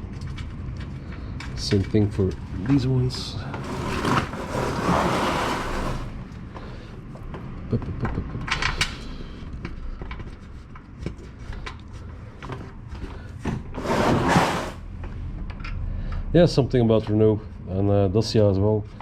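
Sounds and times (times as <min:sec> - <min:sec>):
metal scraping: 0:03.5 - 0:06.2, 0:13.8 - 0:14.8.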